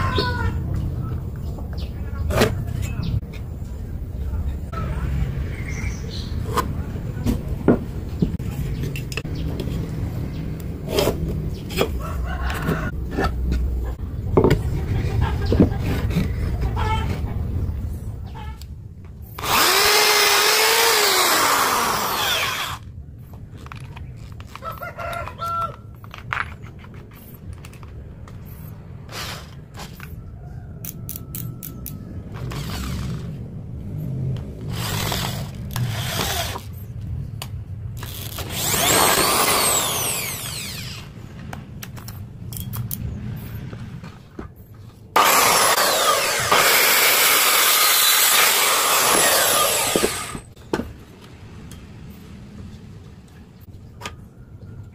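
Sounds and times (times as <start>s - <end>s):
knocks and handling noise: 10.9s - 17.5s, 23.2s - 30.2s, 49.9s - 51.9s
power saw cutting: 19.4s - 22.8s, 34.6s - 36.7s, 38.0s - 41.1s, 45.2s - 50.5s
power tool motor: 19.4s - 22.8s, 32.4s - 33.3s, 34.7s - 36.7s, 38.0s - 41.1s, 45.2s - 50.5s
power tool sweeping whine: 19.4s - 22.8s, 38.1s - 41.1s, 45.2s - 50.5s.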